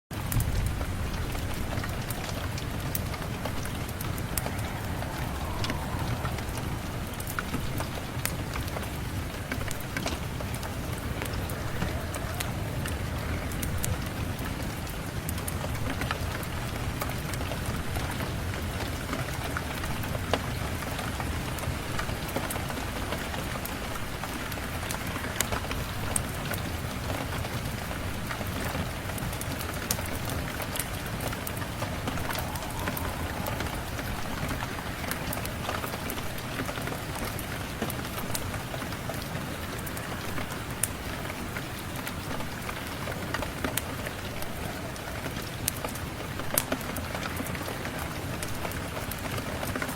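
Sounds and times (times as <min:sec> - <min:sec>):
steady rain: 0:00.1 - 0:49.9
fireplace crackles: 0:00.2 - 0:15.6, 0:29.0 - 0:49.3.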